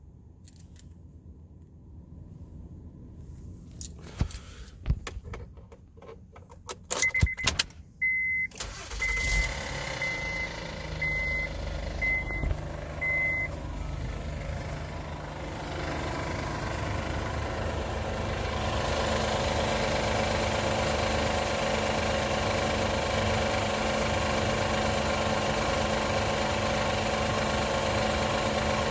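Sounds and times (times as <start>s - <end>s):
car engine starting and idling: 2.9s - 28.9s
loud steady engine hum: 8.6s - 28.9s.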